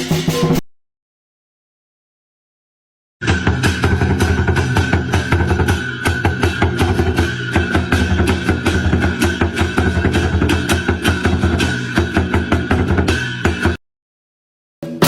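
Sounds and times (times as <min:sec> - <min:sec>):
drum beaten fast: 0:00.0 - 0:00.7, 0:03.2 - 0:13.8.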